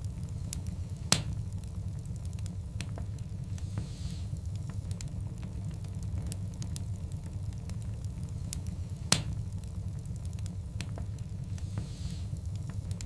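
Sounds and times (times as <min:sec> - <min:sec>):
fire crackling: 0:00.0 - 0:13.0
low rumble of flames: 0:00.0 - 0:13.0
loud pop of burning log: 0:09.1 - 0:09.4.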